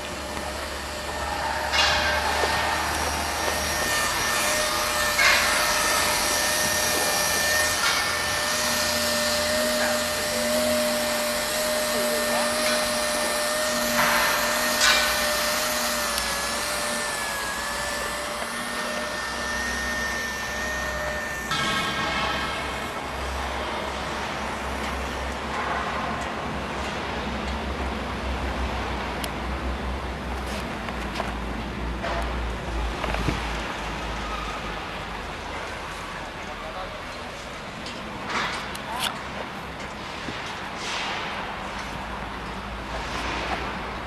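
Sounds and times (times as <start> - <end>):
welding machine blower whine: 0.0 - 25.5.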